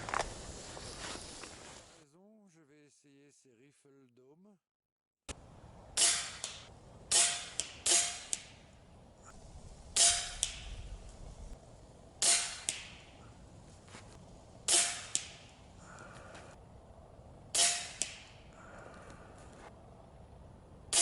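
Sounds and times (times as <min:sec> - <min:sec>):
air rifle shots: 0:06.0 - 0:08.7, 0:09.9 - 0:10.9, 0:12.2 - 0:13.3, 0:14.6 - 0:15.7, 0:17.5 - 0:18.5.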